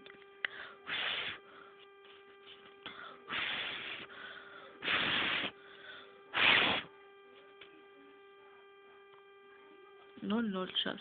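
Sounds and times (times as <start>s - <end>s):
person blowing puffs of breath: 0.5s - 1.8s, 2.8s - 6.9s.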